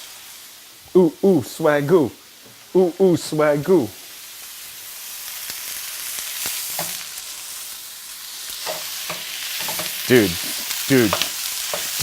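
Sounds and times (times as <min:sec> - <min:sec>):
meat sizzling in a pan: 0:00.0 - 0:12.0
utensil tapping pan: 0:06.7 - 0:07.0, 0:08.6 - 0:12.0.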